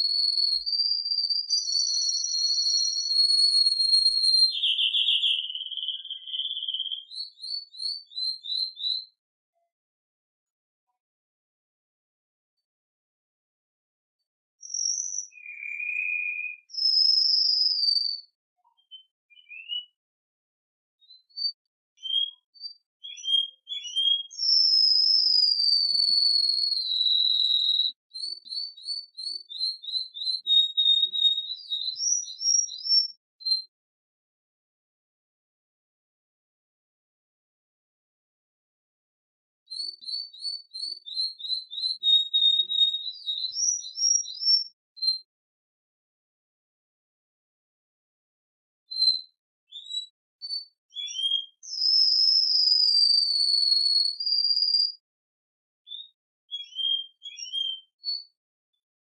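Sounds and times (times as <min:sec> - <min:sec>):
canary singing: 0:00.0 - 0:09.2, 0:14.6 - 0:20.0, 0:21.1 - 0:33.7, 0:39.7 - 0:45.2, 0:49.7 - 0:55.0, 0:55.9 - 0:58.3.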